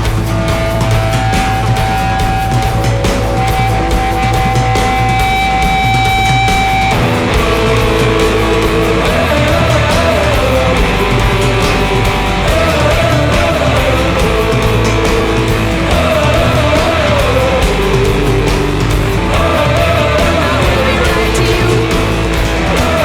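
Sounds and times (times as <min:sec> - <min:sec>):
distorted rock guitars: 0:00.0 - 0:23.0
steady drum beat: 0:00.0 - 0:23.0.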